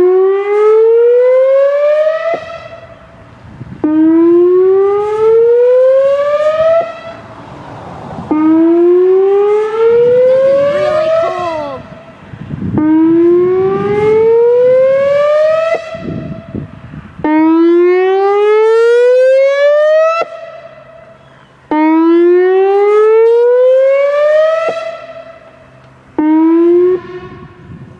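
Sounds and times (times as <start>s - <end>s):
electronic siren whoop: 8.3s - 25.4s, 26.2s - 27.9s.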